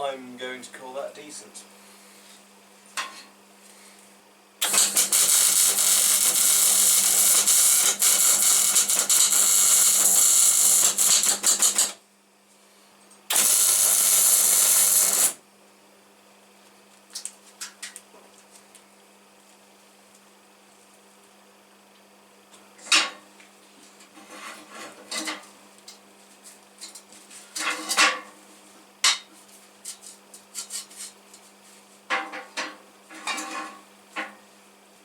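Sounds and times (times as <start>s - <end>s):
arc welder crackling and hissing: 4.6s - 12.0s, 13.3s - 15.4s.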